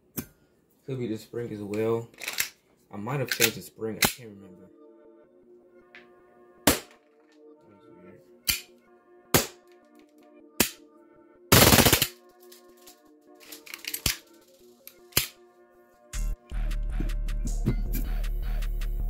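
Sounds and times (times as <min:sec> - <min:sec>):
background music: 0:00.0 - 0:19.0
airsoft pistol shots: 0:09.3 - 0:09.6.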